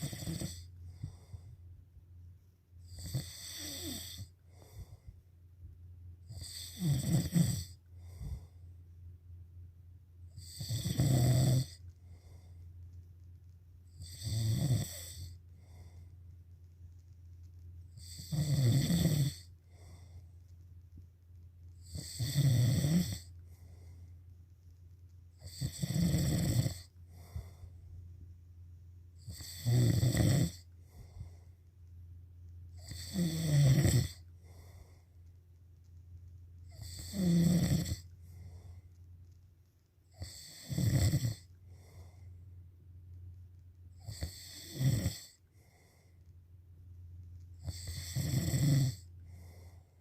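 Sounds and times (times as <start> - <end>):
loud rasping snores: 0.0 - 0.7, 2.9 - 4.3, 6.3 - 7.8, 10.4 - 11.8, 14.0 - 15.4, 18.0 - 19.5, 21.8 - 23.3, 25.4 - 26.9, 29.2 - 30.6, 32.8 - 34.2, 36.7 - 38.0, 40.1 - 41.4, 44.0 - 45.4, 47.6 - 49.1
steady low hum: 0.0 - 50.0.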